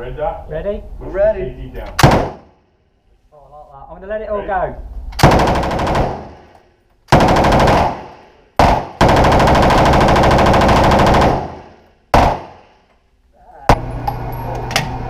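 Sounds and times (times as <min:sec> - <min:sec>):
automatic gunfire bursts: 0:02.0 - 0:02.4, 0:05.2 - 0:06.5, 0:07.1 - 0:12.6.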